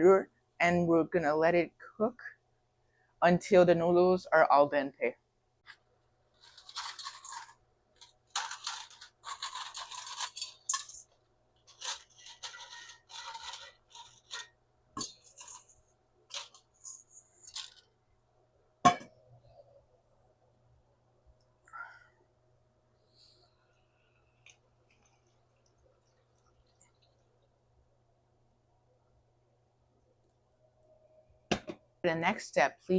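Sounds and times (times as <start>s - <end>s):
dry noodles scraping a skillet: 6.4s - 7.6s, 8.3s - 17.8s.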